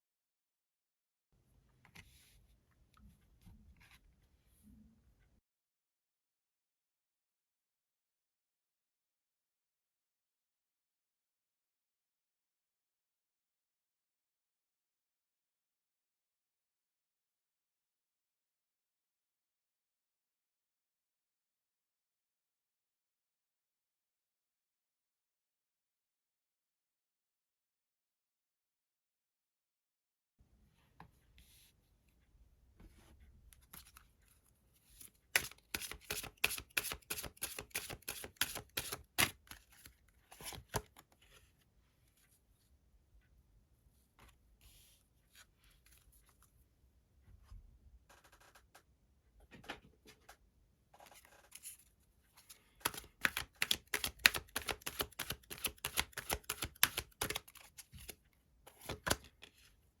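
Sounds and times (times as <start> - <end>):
soft card handling: 32.8 - 42.4, 44.2 - 46.6, 51.0 - 59.8
cards shuffling clicks: 35.4 - 41.0, 52.8 - 59.3.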